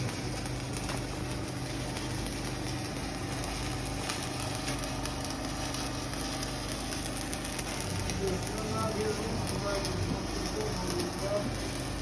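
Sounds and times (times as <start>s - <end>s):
arc welding crackling sizzle: 0.0s - 12.0s
constant low hum: 0.0s - 12.0s.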